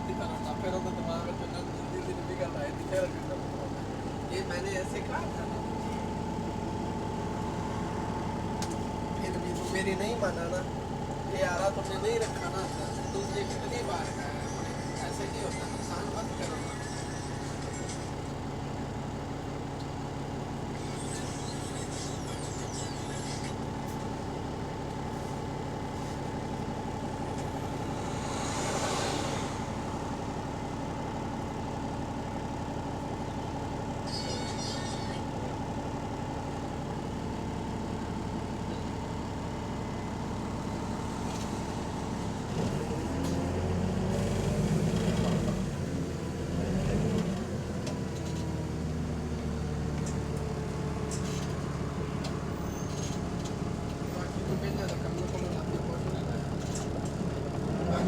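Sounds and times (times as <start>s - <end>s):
bus diesel engine with whine: 0.0s - 58.0s
short hiss of air: 28.1s - 29.8s.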